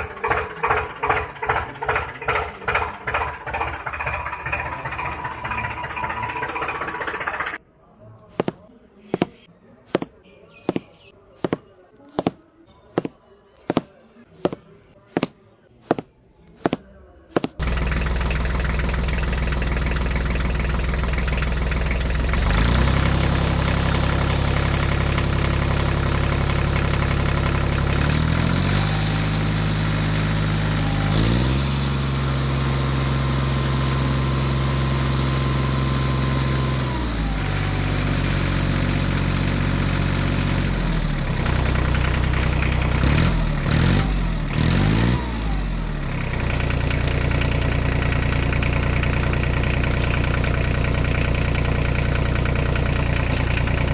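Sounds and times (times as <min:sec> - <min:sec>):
engine running: 0:00.0 - 0:07.6, 0:17.6 - 0:53.9.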